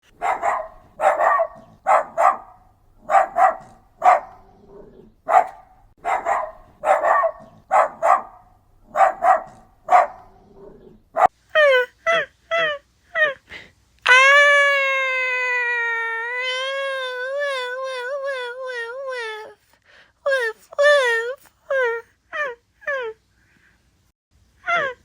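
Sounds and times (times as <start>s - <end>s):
dog barking: 0.0s - 11.4s
dog whining: 0.2s - 2.5s, 3.1s - 5.6s.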